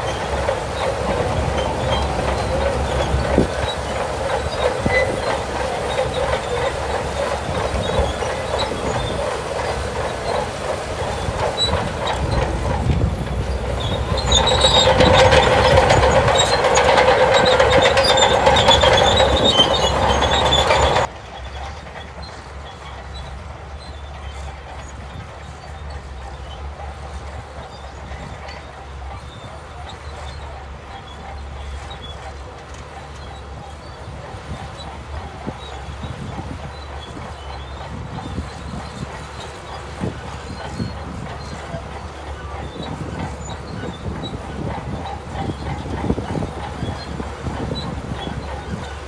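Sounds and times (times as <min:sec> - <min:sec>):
diesel engine running: 0:00.0 - 0:21.1, 0:37.9 - 0:49.0
steel tracks clattering and squealing: 0:00.0 - 0:49.0.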